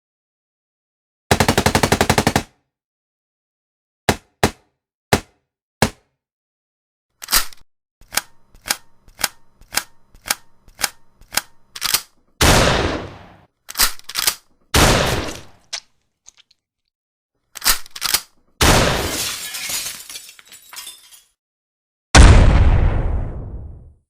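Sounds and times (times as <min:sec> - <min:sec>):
rifle gunshots: 0:12.4 - 0:13.4, 0:14.8 - 0:15.4.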